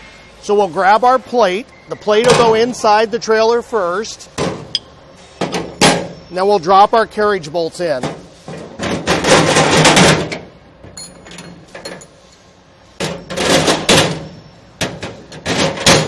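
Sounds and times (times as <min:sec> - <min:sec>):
metal bolts rattling and scraping: 0:08.0 - 0:12.4, 0:13.0 - 0:16.0.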